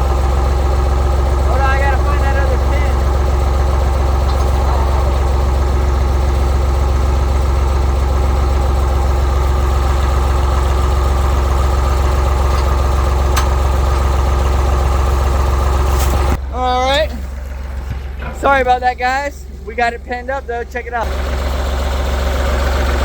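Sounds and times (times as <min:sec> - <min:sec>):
tractor engine idling: 0:00.0 - 0:23.0.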